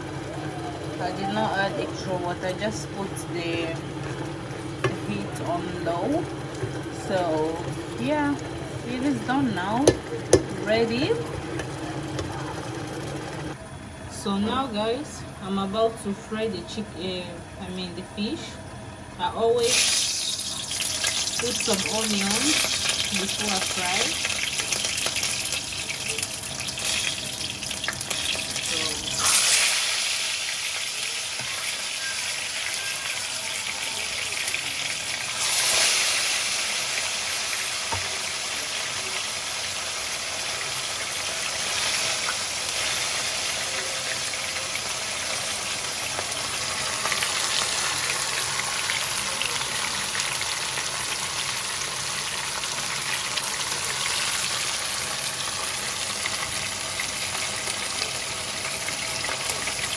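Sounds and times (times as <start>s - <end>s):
oil sizzling in a frying pan: 19.6s - 59.9s.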